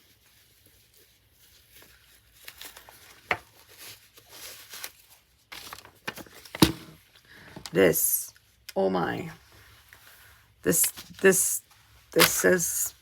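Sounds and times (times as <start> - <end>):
packaging rustling and crinkling: 0.0 - 7.7.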